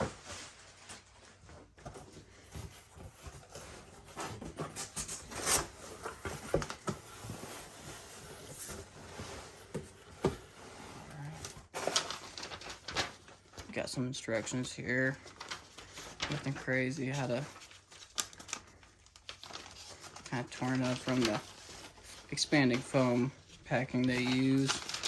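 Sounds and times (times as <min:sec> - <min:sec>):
packaging rustling and scraping: 0:00.0 - 0:25.0.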